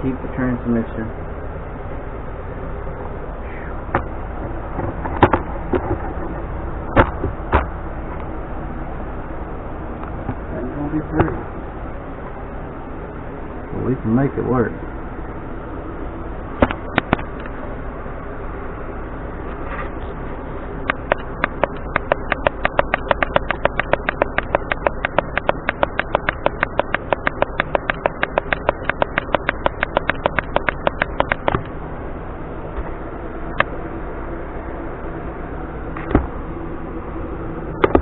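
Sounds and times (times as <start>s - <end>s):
steady background hum: 0.0s - 38.0s
rapid mechanical clicks: 20.8s - 31.7s.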